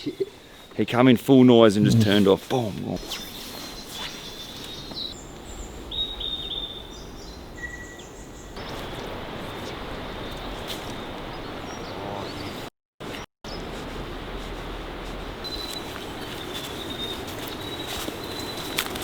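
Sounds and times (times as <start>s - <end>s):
birds chirping and whistling: 3.0s - 10.7s, 15.4s - 19.0s.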